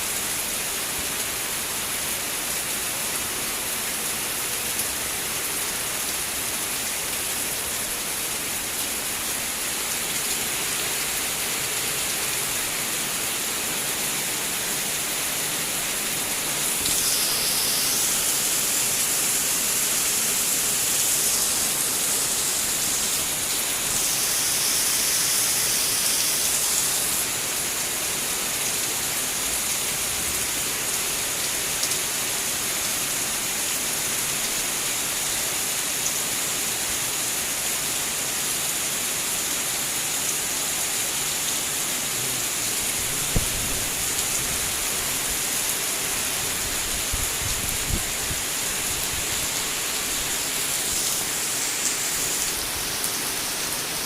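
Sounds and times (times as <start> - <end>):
heavy rain pouring: 0.0 - 54.0.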